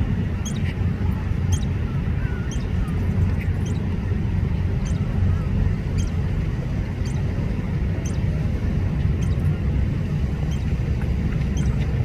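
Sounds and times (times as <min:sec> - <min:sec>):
steady low rumble: 0:00.0 - 0:12.0
small songbirds chirping: 0:00.4 - 0:00.7, 0:01.4 - 0:04.0, 0:04.8 - 0:06.2, 0:07.0 - 0:07.4, 0:08.0 - 0:08.3, 0:09.1 - 0:09.6, 0:10.4 - 0:12.0.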